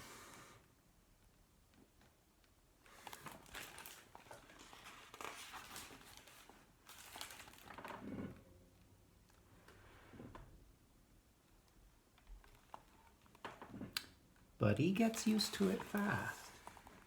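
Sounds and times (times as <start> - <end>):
book pages rustling and turning: 2.9 - 8.4, 14.7 - 17.0.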